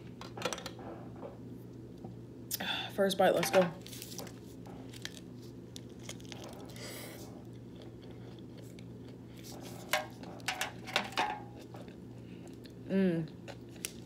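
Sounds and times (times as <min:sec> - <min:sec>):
low steady hum: 0:00.0 - 0:14.0
person chewing: 0:04.6 - 0:10.5, 0:11.5 - 0:14.0.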